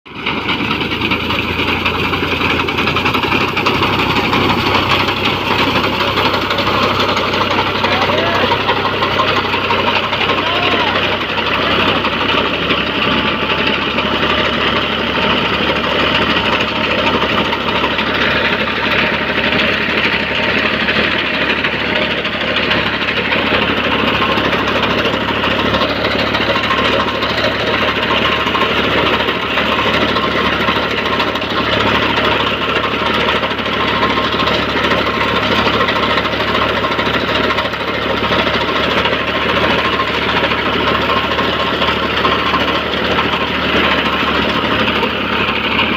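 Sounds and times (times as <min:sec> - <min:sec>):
diesel tractor running: 0:00.0 - 0:45.9
reaper clattering: 0:00.2 - 0:45.9.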